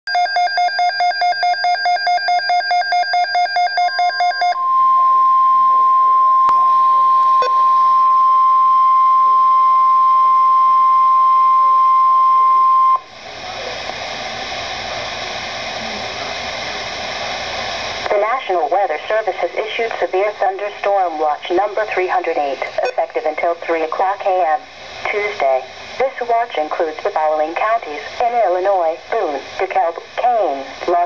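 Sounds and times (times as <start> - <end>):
radio hiss: 13.0 - 31.0
buzzing digital data tones: 22.7 - 23.0
steady alert tone: 22.7 - 23.0.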